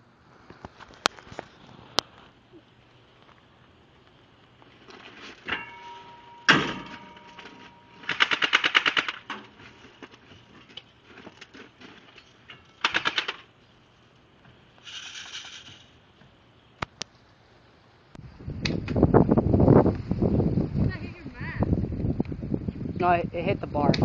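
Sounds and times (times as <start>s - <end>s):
airsoft guns firing full auto: 7.9s - 9.3s, 12.8s - 13.5s.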